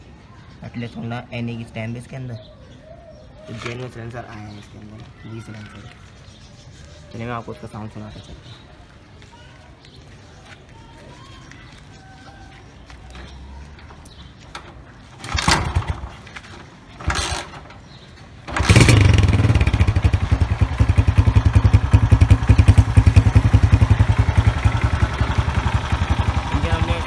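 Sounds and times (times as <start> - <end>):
motorcycle engine starting and idling: 13.1 - 27.0
man talking: 26.5 - 27.0.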